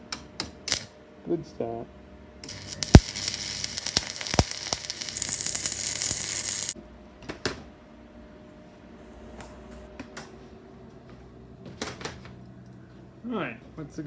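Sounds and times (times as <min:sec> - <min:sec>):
welding arc hissing and crackling: 0:00.7 - 0:00.9, 0:02.4 - 0:06.8
sharp clicks: 0:02.5 - 0:06.8.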